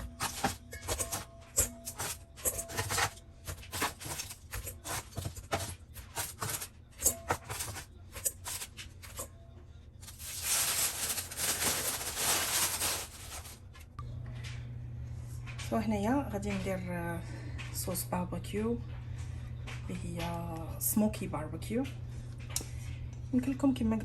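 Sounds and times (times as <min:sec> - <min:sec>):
utensils tapping against cookware: 0:00.0 - 0:09.3
steady low hum: 0:00.0 - 0:24.0.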